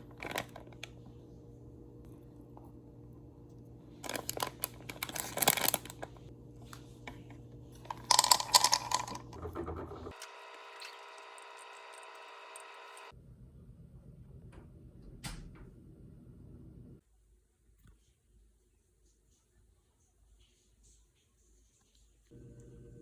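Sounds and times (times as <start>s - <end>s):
crinkling handling noise: 0.0s - 1.2s, 3.9s - 9.4s.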